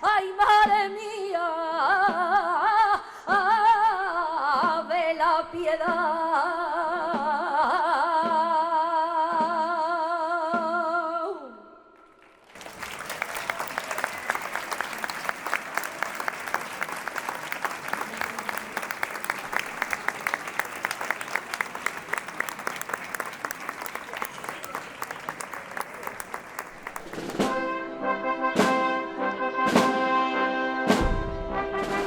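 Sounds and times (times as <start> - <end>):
audience applause: 12.2 - 27.6.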